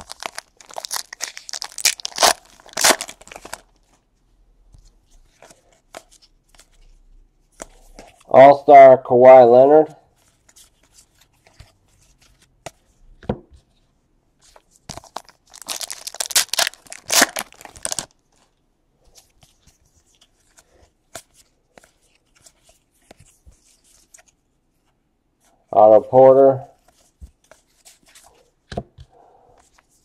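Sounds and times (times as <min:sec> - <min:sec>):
foil wrapper tearing and crinkling: 0:00.0 - 0:03.7, 0:15.0 - 0:18.1.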